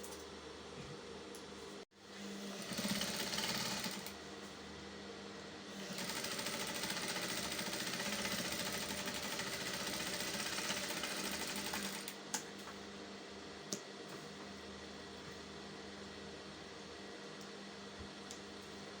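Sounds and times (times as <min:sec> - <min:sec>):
sewing machine running: 0:02.2 - 0:04.2, 0:05.7 - 0:12.2.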